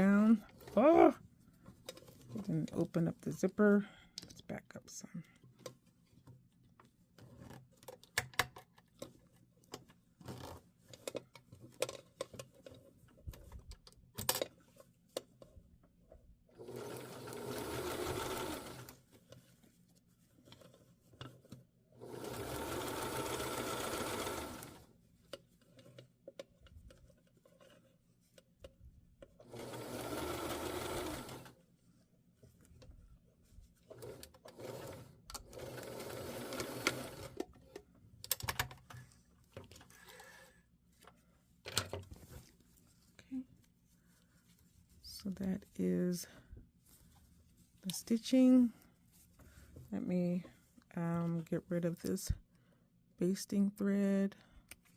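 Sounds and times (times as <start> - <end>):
sewing machine stitching: 16.5 - 19.0, 21.9 - 24.9, 29.4 - 31.6, 33.9 - 37.4.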